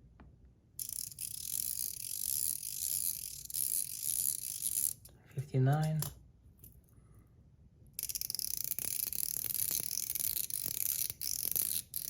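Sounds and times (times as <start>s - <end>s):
fidget toy clicking rapidly: 8.0s - 12.0s.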